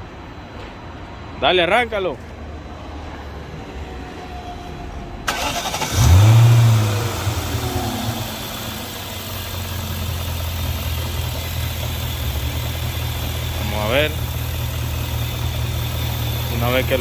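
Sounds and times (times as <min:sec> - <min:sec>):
car engine revving and idling: 0:05.3 - 0:17.0
starter cranking engine: 0:05.3 - 0:17.0.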